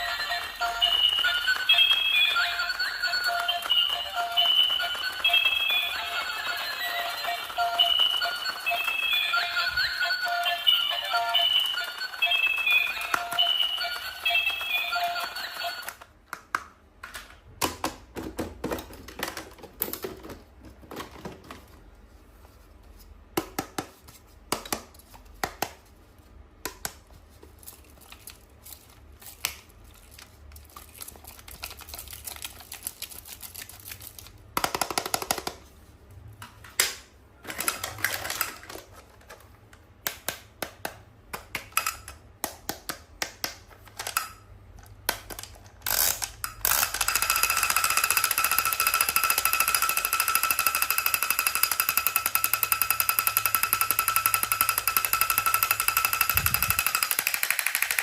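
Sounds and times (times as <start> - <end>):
plastic toy parts clicking: 36.8 - 39.4, 41.3 - 58.0.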